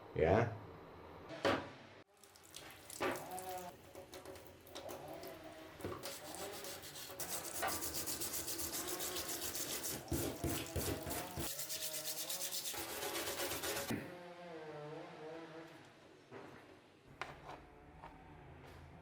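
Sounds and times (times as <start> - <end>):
scrubbing knife back and forth: 6.0 - 13.9.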